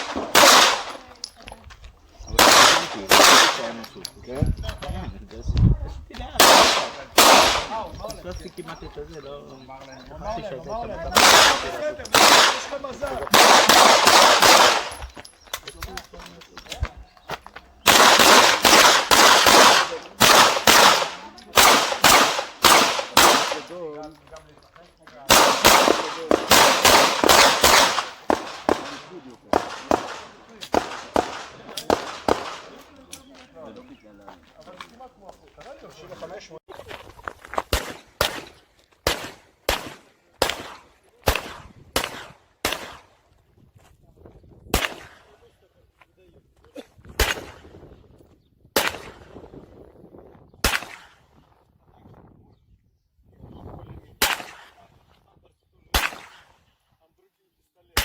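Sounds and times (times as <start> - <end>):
pistol shots with echo: 0.0 - 1.2, 2.4 - 4.0, 6.4 - 8.0, 11.1 - 15.1, 17.8 - 23.8, 25.3 - 33.0, 37.7 - 43.1, 44.7 - 45.4, 47.2 - 47.7, 48.7 - 49.4, 50.6 - 51.3, 54.2 - 54.9, 55.9 - 56.6.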